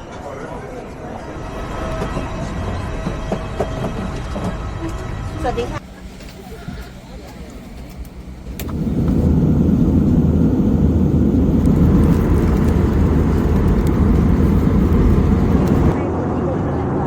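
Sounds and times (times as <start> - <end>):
vehicle rumble from inside: 4.8 - 16.0.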